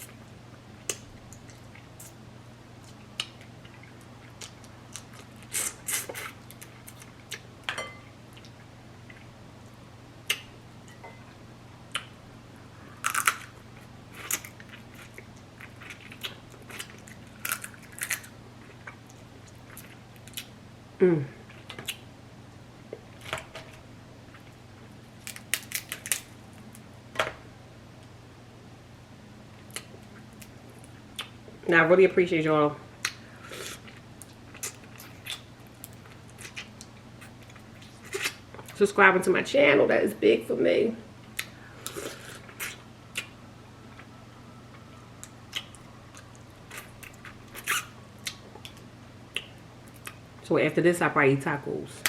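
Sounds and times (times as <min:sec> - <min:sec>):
low steady hum: 0:00.0 - 0:52.0
crab shell cracking: 0:13.0 - 0:13.6, 0:25.2 - 0:26.3
chewing: 0:44.7 - 0:50.2.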